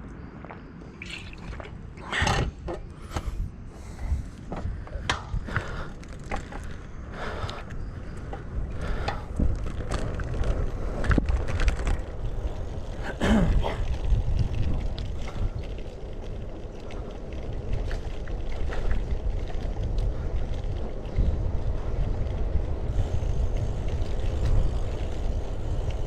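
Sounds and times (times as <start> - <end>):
bicycle tyre and road noise: 0.0 - 26.0
wind buffeting microphone: 0.0 - 26.0.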